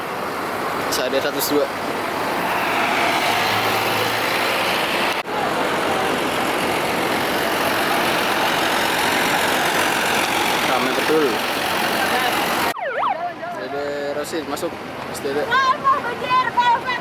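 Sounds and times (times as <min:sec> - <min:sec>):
bus engines idling: 0:00.0 - 0:12.8.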